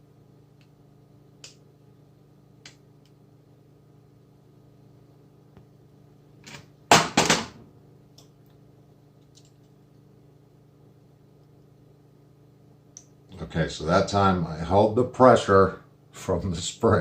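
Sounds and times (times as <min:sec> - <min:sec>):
light clicks of small parts: 0:08.1 - 0:08.6, 0:09.2 - 0:10.0, 0:12.9 - 0:13.2.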